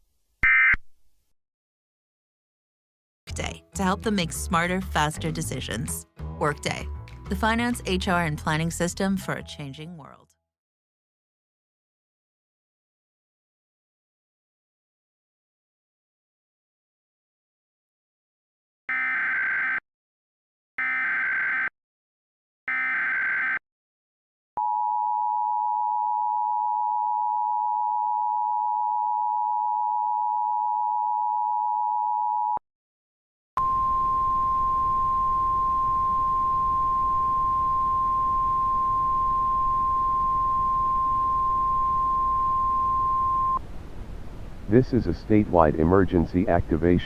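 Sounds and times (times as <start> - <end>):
steady warning alarm tone: 20.8 - 21.7, 22.7 - 23.6, 33.6 - 43.6
two-tone attention signal: 33.6 - 43.6.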